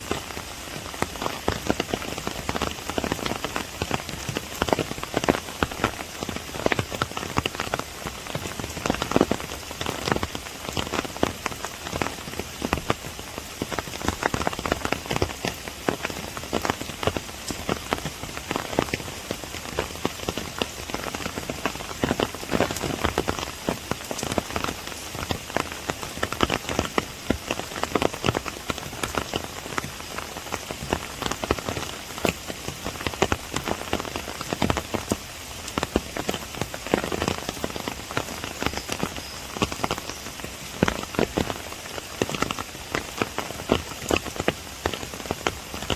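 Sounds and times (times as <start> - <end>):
raindrops tapping an umbrella: 0.0 - 45.9
steady rain: 0.0 - 45.9.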